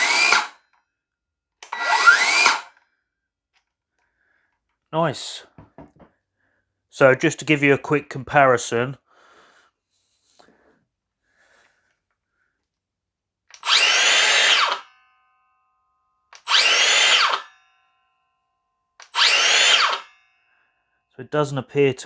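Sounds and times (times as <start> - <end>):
circular saw running: 0.0 - 0.6, 1.6 - 2.7, 13.6 - 14.8, 16.4 - 17.5, 19.1 - 20.1
saw blade ringing whine: 1.7 - 2.7, 13.7 - 15.6, 16.4 - 17.9, 19.2 - 20.7.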